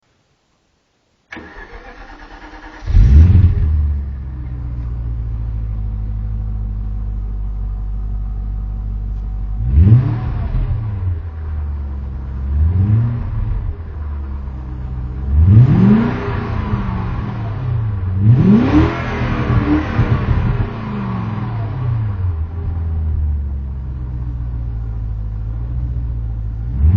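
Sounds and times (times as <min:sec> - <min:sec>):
car engine idling and revving: 0:01.4 - 0:26.9.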